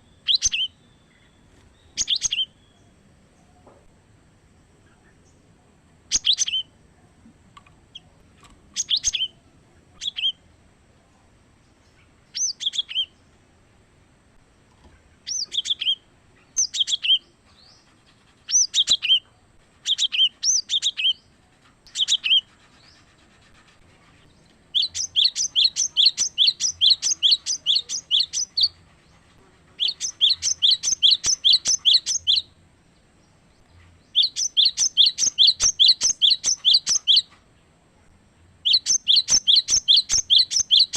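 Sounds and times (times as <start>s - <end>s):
bird singing: 0.0s - 3.8s, 6.1s - 6.8s, 7.9s - 10.4s, 11.6s - 13.3s, 15.1s - 17.9s, 18.5s - 23.2s, 24.3s - 37.3s, 38.6s - 40.9s.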